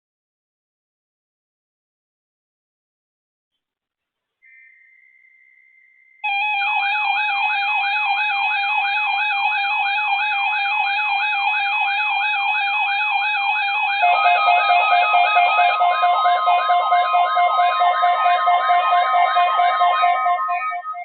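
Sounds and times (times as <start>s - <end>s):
steady hum of high tones: 4.7s - 21.0s
electronic siren wail: 6.2s - 21.0s
pulsing two-pitch beep: 6.2s - 21.0s.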